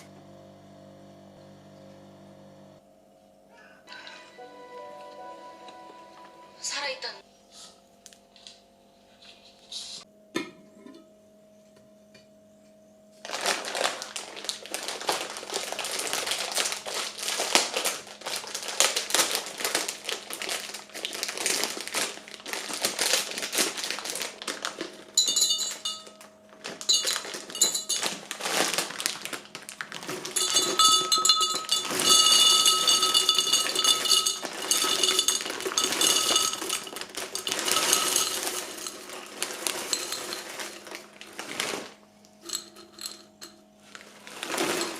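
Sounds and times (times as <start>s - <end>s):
dishes clinking: 10.4s - 11.1s, 25.2s - 26.2s, 26.8s - 28.2s, 30.3s - 41.0s, 42.4s - 43.6s
household objects clattering: 25.1s - 44.9s.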